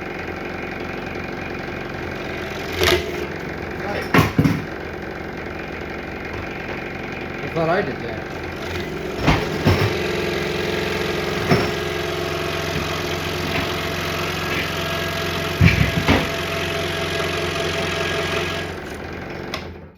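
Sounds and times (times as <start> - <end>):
scroll saw cutting wood: 2.3 - 3.4, 8.4 - 19.6
sharp knocks: 15.6 - 16.4.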